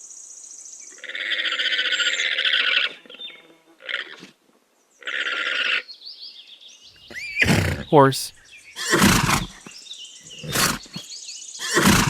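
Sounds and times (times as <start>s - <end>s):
llama calling: 7.0s - 9.7s, 10.3s - 11.0s, 11.6s - 12.0s.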